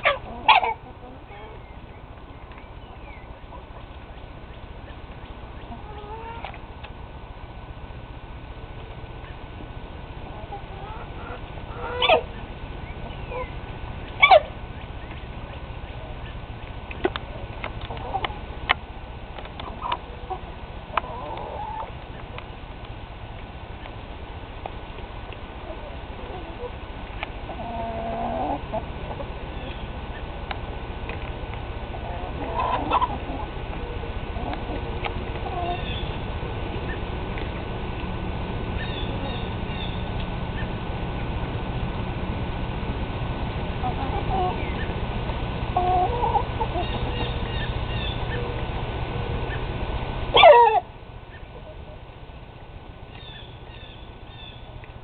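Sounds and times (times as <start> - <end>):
rooster clucking: 0.0 - 1.6, 5.6 - 6.6, 10.3 - 14.6, 19.6 - 22.3, 27.4 - 30.3, 31.9 - 36.2, 43.8 - 45.0, 45.7 - 48.5
low background rumble: 0.0 - 55.0.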